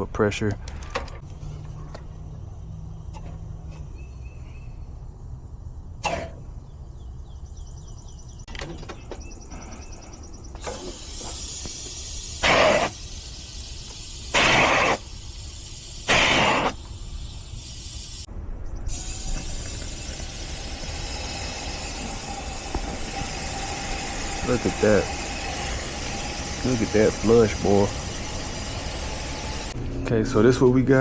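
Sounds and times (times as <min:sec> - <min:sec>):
steady gas hiss: 0:10.6 - 0:18.3, 0:18.9 - 0:29.8
blasts of rushing gas: 0:10.6 - 0:29.8.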